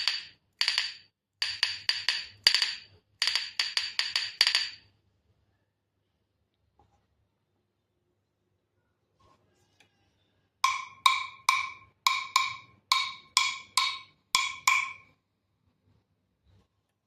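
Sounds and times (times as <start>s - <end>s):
wooden percussion knocks: 0.0s - 4.9s, 10.6s - 15.1s.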